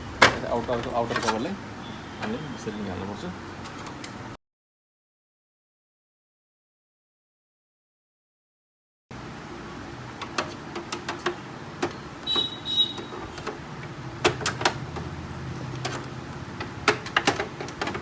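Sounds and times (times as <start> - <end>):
plastic clicks and knocks: 10.2 - 18.0.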